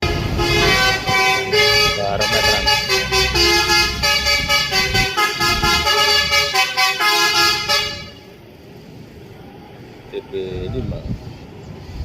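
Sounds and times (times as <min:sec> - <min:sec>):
musical air horn playing a tune: 0:00.0 - 0:08.3
bus engine rumbling: 0:00.0 - 0:12.0.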